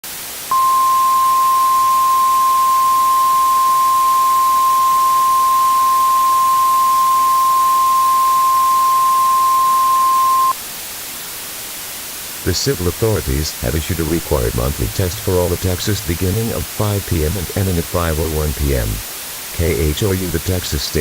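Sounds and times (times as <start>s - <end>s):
constant hiss: 0.0s - 21.0s
loud steady alert tone: 0.5s - 10.6s.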